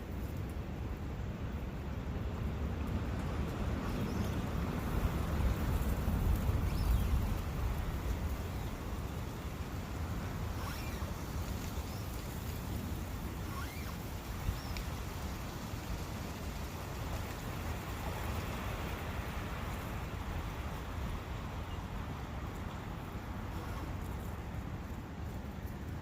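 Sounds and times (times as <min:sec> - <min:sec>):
wind rushing in forest: 0:00.0 - 0:26.0
faint short high calls: 0:13.4 - 0:14.8.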